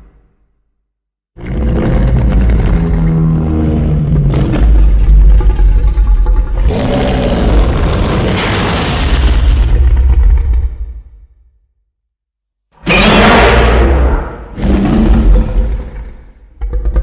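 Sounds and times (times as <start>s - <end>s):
deep rumbling monster roar: 1.4s - 11.4s, 12.8s - 17.0s.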